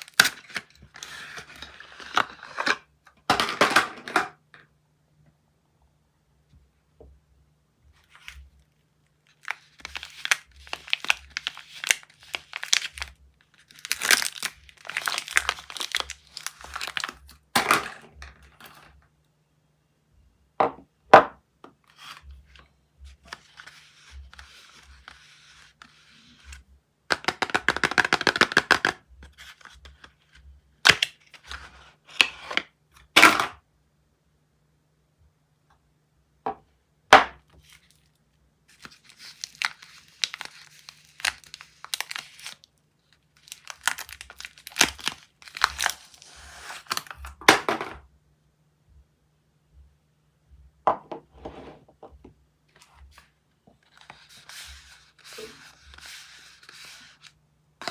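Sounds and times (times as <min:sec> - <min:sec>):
wrapper crinkling and tearing: 0:00.0 - 0:02.7, 0:09.2 - 0:17.5, 0:37.6 - 0:47.4.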